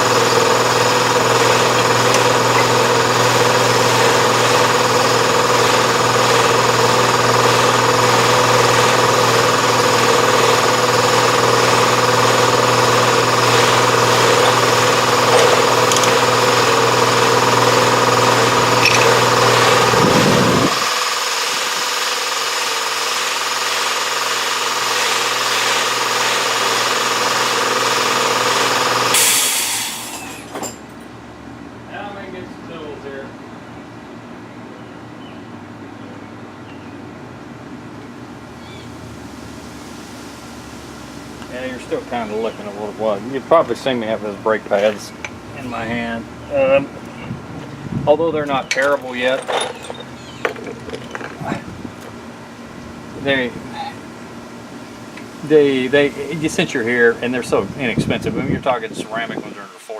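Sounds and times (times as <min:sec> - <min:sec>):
machine motor running: 0:00.0 - 0:30.1
brief hiss: 0:29.2 - 0:30.2.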